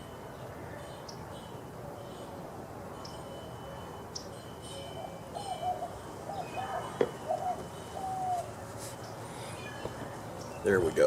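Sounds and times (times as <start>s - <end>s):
small birds chirping: 0.3s - 2.3s, 4.1s - 11.0s
dove cooing: 4.8s - 8.6s.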